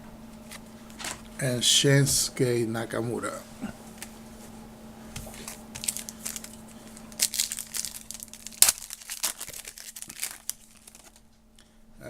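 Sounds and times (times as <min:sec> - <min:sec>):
wrapper crinkling and tearing: 0:05.3 - 0:11.2.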